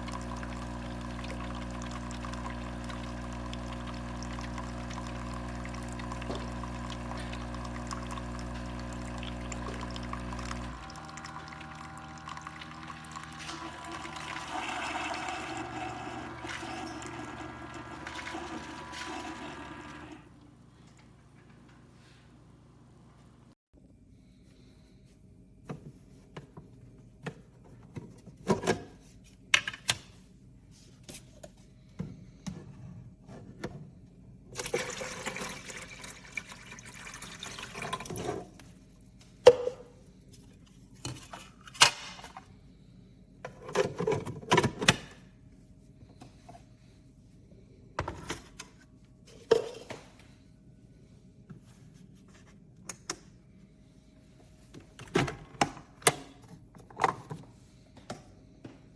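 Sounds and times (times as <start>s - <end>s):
water pouring: 0.0s - 23.6s, 34.6s - 38.4s.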